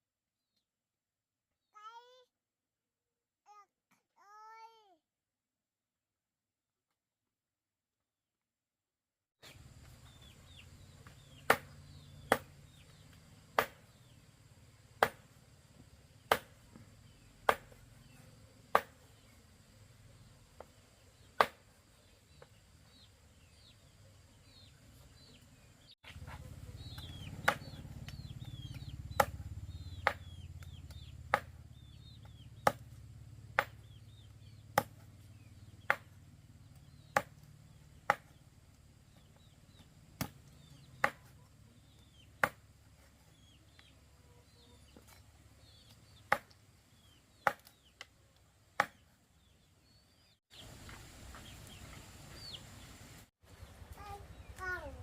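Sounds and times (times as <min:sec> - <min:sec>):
small birds chirping: 0:01.6 - 0:02.3, 0:09.4 - 0:55.0
blade chopping: 0:13.6 - 0:13.9, 0:26.0 - 0:31.6.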